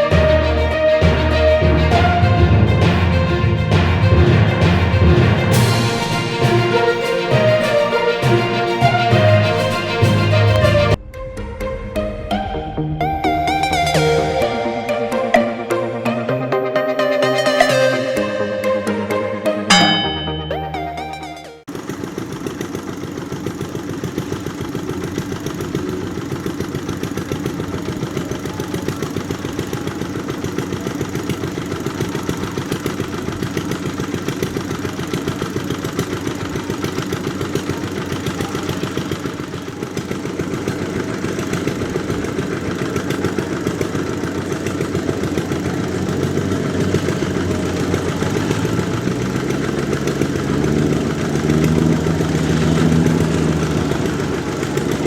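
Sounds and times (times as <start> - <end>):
diesel engine chugging: 0.0 - 11.0, 21.7 - 55.0.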